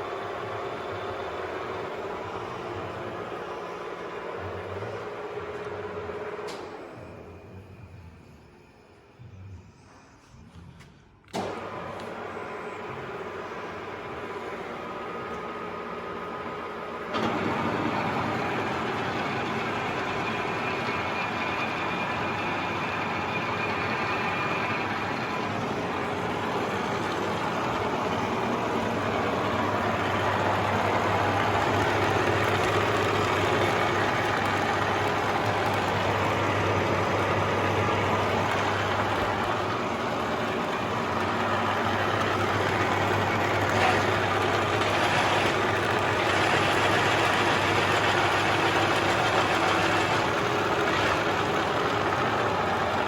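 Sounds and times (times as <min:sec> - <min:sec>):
milling machine running: 0:00.0 - 0:09.0, 0:11.4 - 0:53.0.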